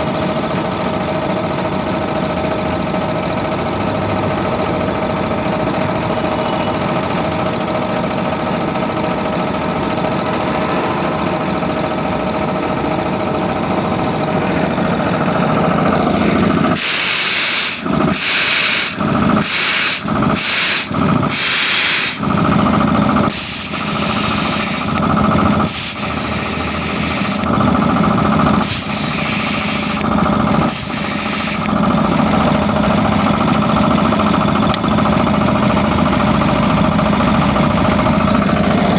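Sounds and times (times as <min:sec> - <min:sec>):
air compressor running: 0:00.0 - 0:38.9
compressed air hissing blasts: 0:16.7 - 0:22.4, 0:23.3 - 0:25.0, 0:25.6 - 0:27.5, 0:28.6 - 0:30.0, 0:30.7 - 0:31.7.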